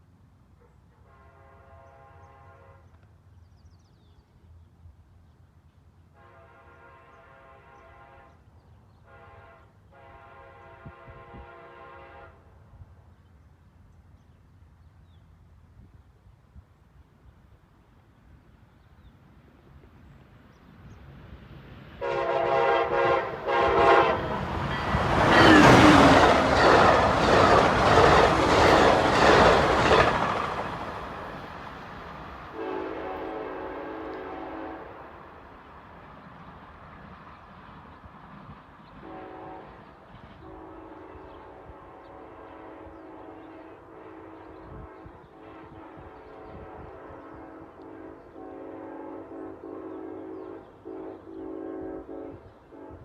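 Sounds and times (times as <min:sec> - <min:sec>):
train air horn blasts: 0:01.0 - 0:02.9, 0:06.2 - 0:08.4, 0:09.0 - 0:12.5, 0:22.0 - 0:29.0, 0:32.5 - 0:35.2, 0:39.0 - 0:39.8, 0:40.4 - 0:53.0
train wheel clatter: 0:24.2 - 0:32.5.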